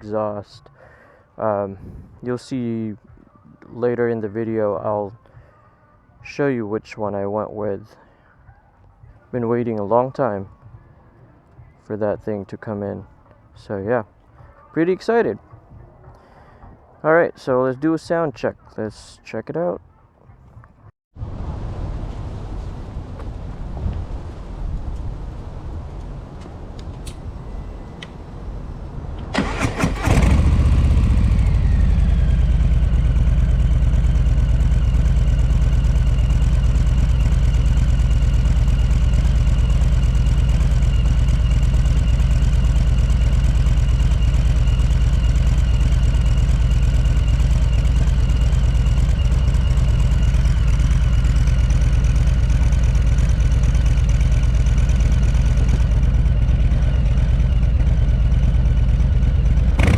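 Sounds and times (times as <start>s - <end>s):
motorcycle engine starting: 26.6s - 59.9s
motorcycle engine idling: 29.4s - 59.9s.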